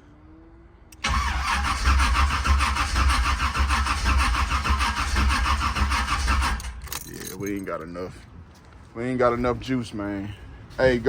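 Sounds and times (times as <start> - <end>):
starter motor cranking engine: 1.0 - 6.8.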